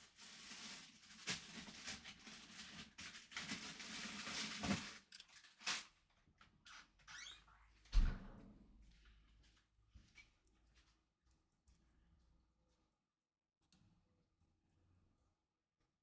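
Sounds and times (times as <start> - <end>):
handling rustling and scraping: 0.0 - 6.0.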